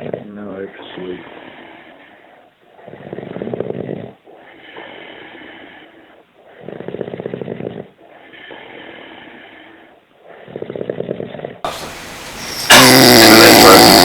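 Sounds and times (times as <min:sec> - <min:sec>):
quiet breaths: 0:00.0 - 0:12.7
man snoring: 0:10.7 - 0:14.0.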